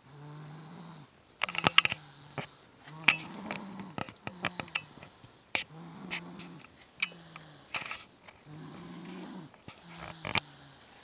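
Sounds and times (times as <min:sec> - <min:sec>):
baby snoring: 0:00.0 - 0:11.0.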